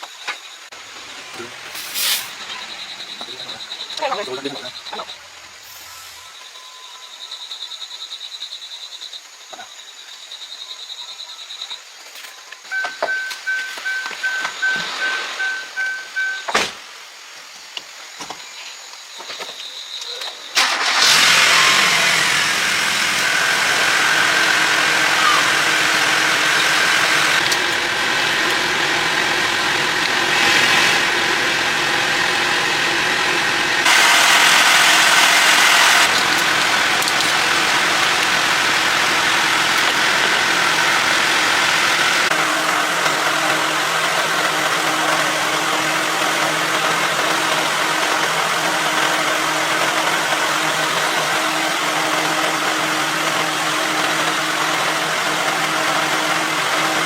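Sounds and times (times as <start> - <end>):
car engine running: 0.7 - 6.3, 20.6 - 57.0.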